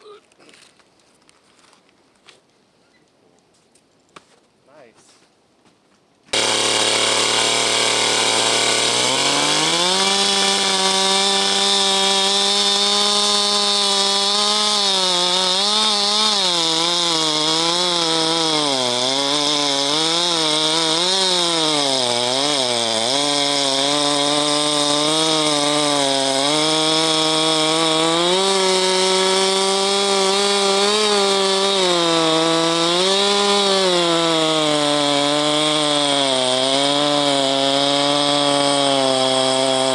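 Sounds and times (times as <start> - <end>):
chainsaw cutting wood: 6.3 - 39.9.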